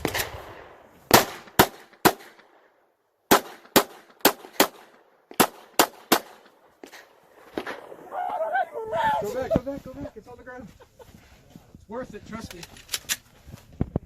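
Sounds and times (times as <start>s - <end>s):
pistol shots: 0.0s - 2.5s, 3.3s - 8.0s.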